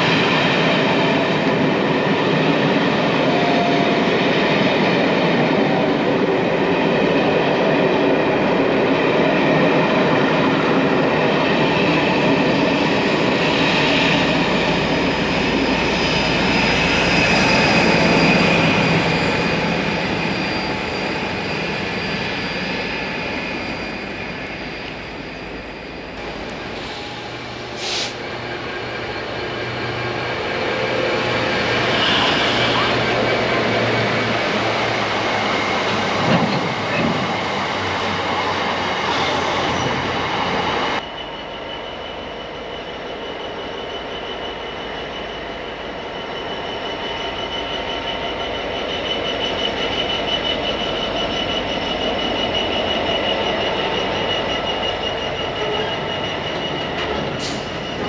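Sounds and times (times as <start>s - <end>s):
train passing: 0.0s - 58.0s
high wheel squeal: 8.9s - 58.0s.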